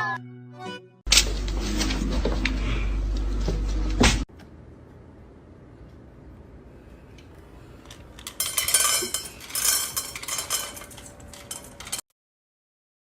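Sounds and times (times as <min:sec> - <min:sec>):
dishes and cutlery clattering: 0:08.2 - 0:12.0.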